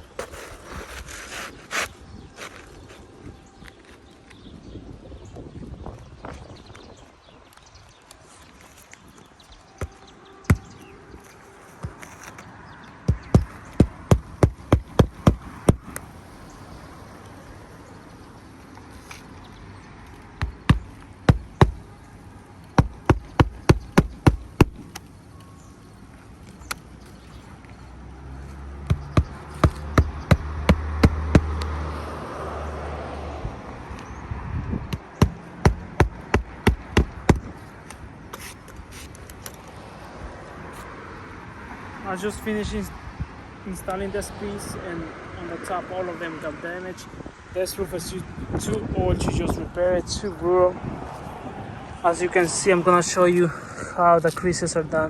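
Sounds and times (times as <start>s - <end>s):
hammer striking nails: 13.1s - 16.0s, 22.8s - 25.0s, 28.9s - 31.6s, 34.9s - 37.5s.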